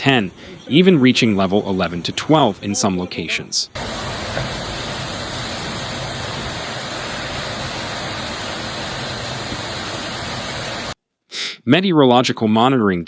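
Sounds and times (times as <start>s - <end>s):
wind: 0.0s - 11.0s
pouring rain: 3.8s - 11.0s.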